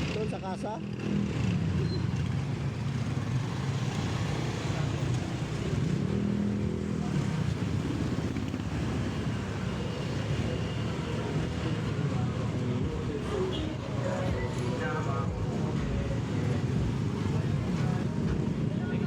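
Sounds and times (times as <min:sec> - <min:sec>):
road noise: 0:00.0 - 0:19.0.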